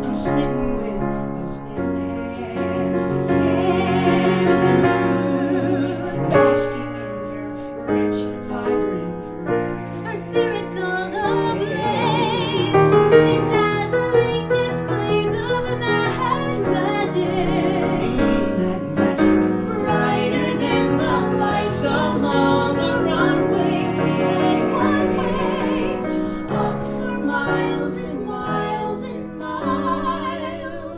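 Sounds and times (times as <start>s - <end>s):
piano accompaniment: 0.0s - 30.9s
woman singing with vibrato: 10.1s - 19.0s, 19.7s - 30.9s.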